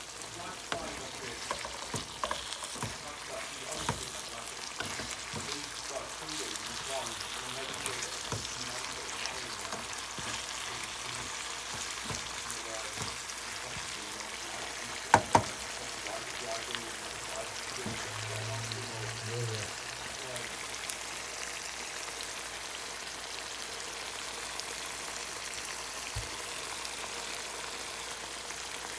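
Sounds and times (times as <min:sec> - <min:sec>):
chicken sizzling in hot oil: 0:00.0 - 0:28.9
utensil knocking and scraping: 0:00.5 - 0:15.7, 0:17.7 - 0:18.3.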